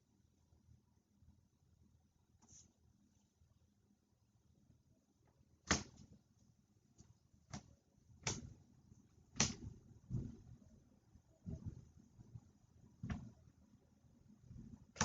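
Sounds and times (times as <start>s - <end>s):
cards snapping and tapping: 7.5s - 8.5s, 9.4s - 9.7s.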